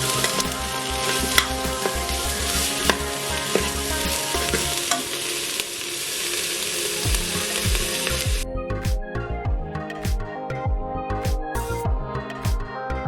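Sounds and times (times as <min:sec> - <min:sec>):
music with pulsing bass beat: 0:00.0 - 0:04.9, 0:07.0 - 0:13.0
utensil clicking against pot: 0:00.0 - 0:05.2
food sizzling in hot oil: 0:00.0 - 0:08.4.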